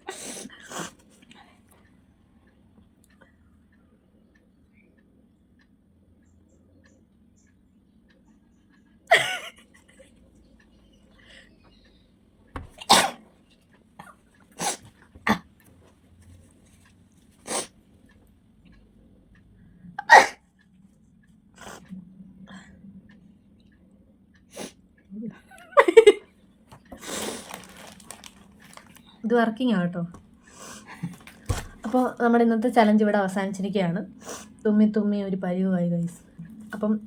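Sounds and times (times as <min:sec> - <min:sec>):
person sneezing: 0:12.8 - 0:13.2, 0:20.0 - 0:20.4.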